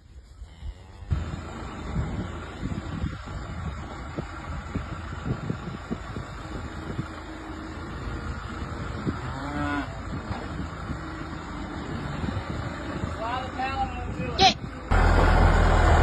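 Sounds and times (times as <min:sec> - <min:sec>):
engine running: 0:01.0 - 0:16.0
cow mooing: 0:09.1 - 0:10.1.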